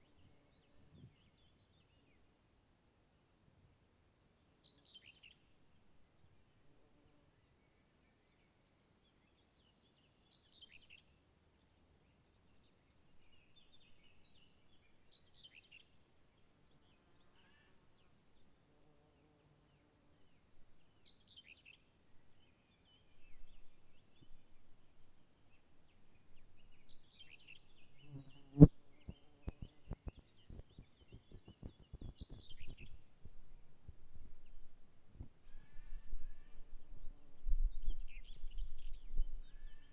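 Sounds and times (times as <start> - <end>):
cricket trill: 10.1 - 39.9.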